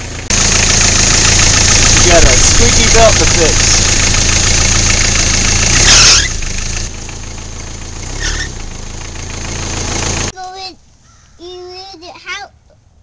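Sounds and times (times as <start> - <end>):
diesel engine running: 0.0 - 10.4
fan belt squealing: 0.1 - 10.3.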